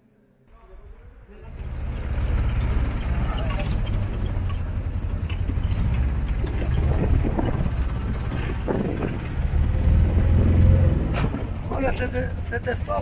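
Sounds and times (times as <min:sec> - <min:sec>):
road rumble: 0:00.5 - 0:13.0
motor rickshaw engine: 0:01.4 - 0:13.0.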